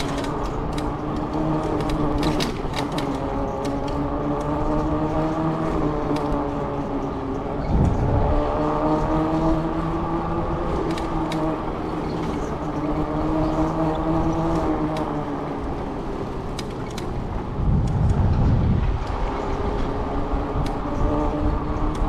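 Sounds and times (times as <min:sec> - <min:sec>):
electric bike droning hum: 0:00.0 - 0:22.0
wind rumbling on microphone: 0:00.0 - 0:22.0
light clicks: 0:21.8 - 0:22.0.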